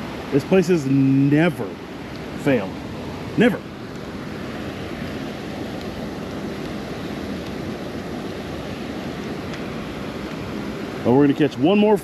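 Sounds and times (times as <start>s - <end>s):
water rushing through spillway: 0.0s - 12.0s.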